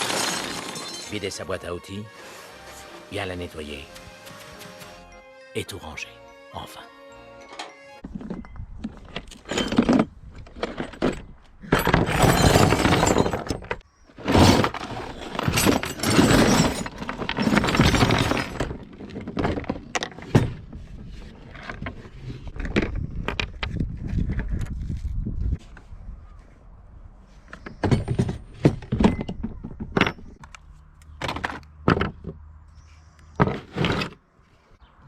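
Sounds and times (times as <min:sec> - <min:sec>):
metal hand tools clattering: 0:00.0 - 0:01.5, 0:14.4 - 0:18.9.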